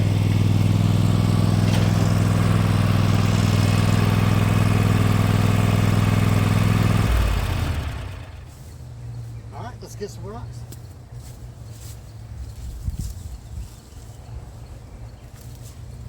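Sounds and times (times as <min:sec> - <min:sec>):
small engine idling: 0:00.0 - 0:09.2.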